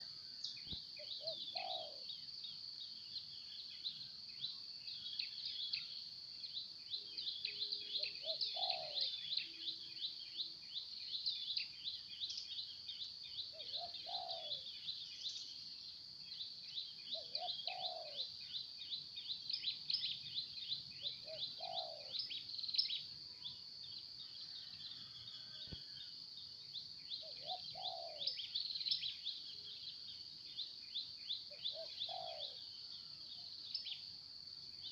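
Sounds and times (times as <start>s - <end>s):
dove cooing: 1.2s - 2.1s, 7.9s - 9.2s, 13.5s - 14.7s, 17.1s - 18.3s, 21.0s - 22.2s, 27.2s - 28.4s, 31.5s - 32.6s
high-pitched chirping chorus: 2.8s - 25.6s, 26.8s - 34.2s.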